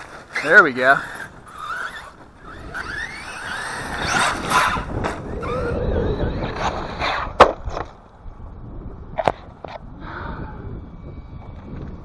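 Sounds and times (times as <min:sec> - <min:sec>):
electric motor whining: 0:00.0 - 0:07.2
wind buffeting microphone: 0:00.0 - 0:12.0.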